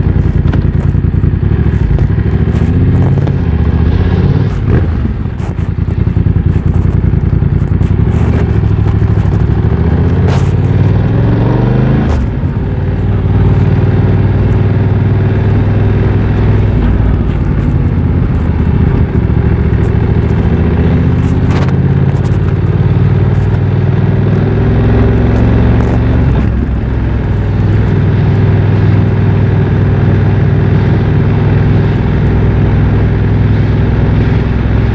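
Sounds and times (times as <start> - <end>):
motorcycle engine revving while riding: 0.0 - 34.9.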